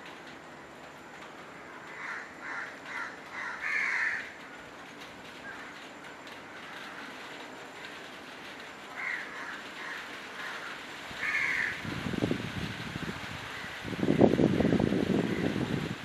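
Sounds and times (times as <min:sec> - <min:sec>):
background hiss: 0:00.0 - 0:16.0
bird harsh calls: 0:01.9 - 0:04.3, 0:08.9 - 0:11.8.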